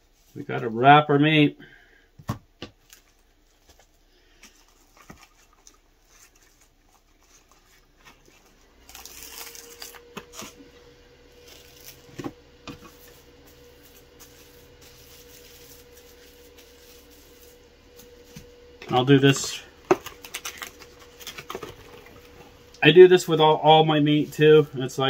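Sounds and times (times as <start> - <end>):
low hum with thin tone: 0.0 - 25.0
plastic wrap crinkling: 2.8 - 10.6, 11.4 - 12.2, 12.8 - 22.8.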